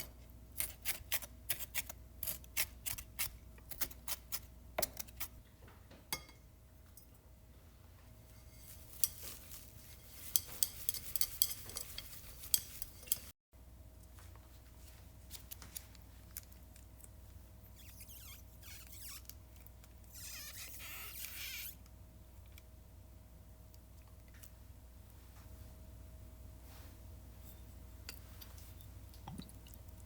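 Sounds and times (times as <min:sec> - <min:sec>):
utensils clinking on dishes: 0:08.4 - 0:13.3
low steady hum: 0:21.8 - 0:30.0.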